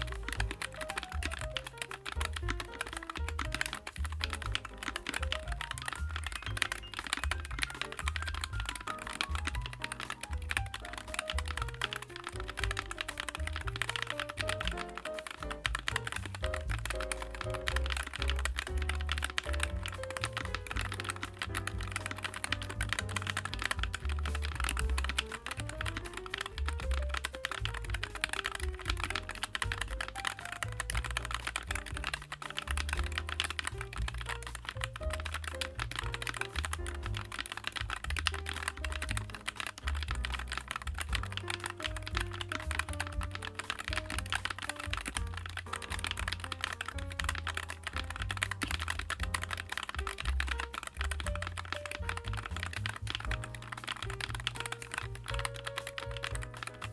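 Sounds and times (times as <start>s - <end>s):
background music: 0.0s - 56.9s
mechanical keyboard typing: 0.0s - 56.9s.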